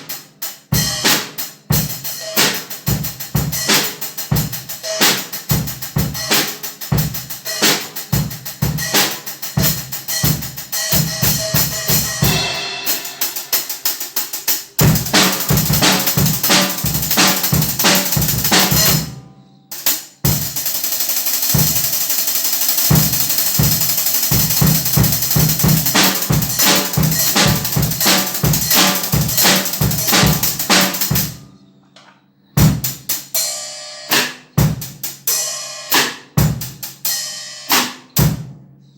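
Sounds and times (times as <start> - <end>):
drum kit playing: 0.0 - 31.4, 32.6 - 38.6
cymbals ringing: 10.8 - 19.1.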